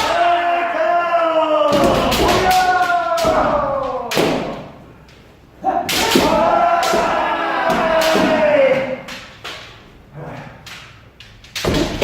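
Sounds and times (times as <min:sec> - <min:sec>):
long drawn-out shout: 0:00.0 - 0:04.2, 0:05.6 - 0:09.1.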